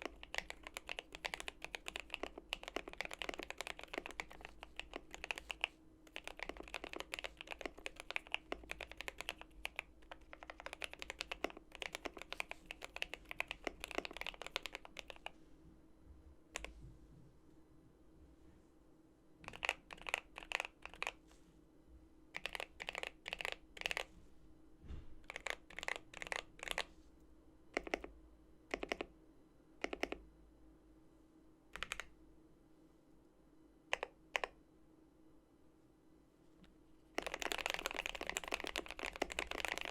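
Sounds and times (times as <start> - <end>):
mechanical keyboard typing: 0.0 - 15.3, 19.4 - 21.2, 22.4 - 24.1, 25.2 - 26.9, 27.7 - 28.1, 28.7 - 29.1, 29.8 - 30.2, 31.8 - 32.1, 33.9 - 34.6, 37.2 - 39.9.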